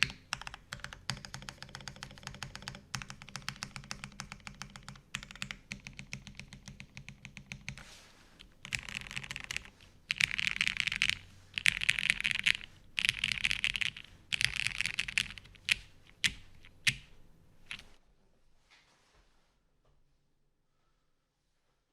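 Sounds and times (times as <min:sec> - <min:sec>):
mechanical keyboard typing: 0:00.0 - 0:07.8, 0:08.4 - 0:17.1.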